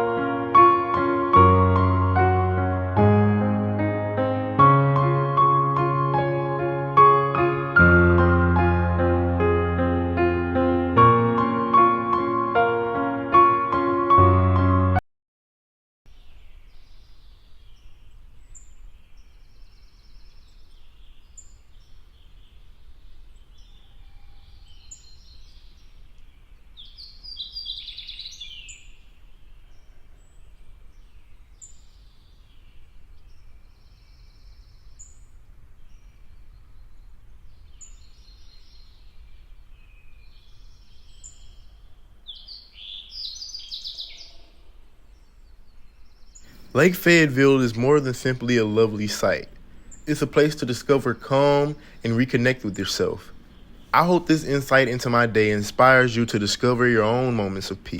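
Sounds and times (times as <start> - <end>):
songbirds singing and chirping: 16.1 - 57.9.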